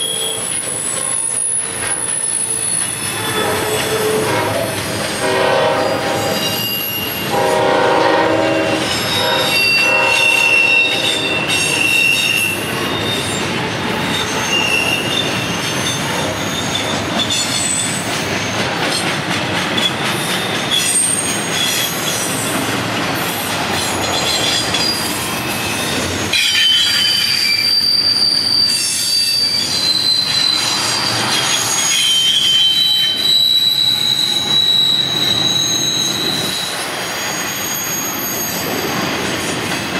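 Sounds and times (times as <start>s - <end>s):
rolling train noise: 0.0s - 39.9s
train wheels squealing: 0.0s - 39.9s
locomotive air horn: 3.1s - 12.3s.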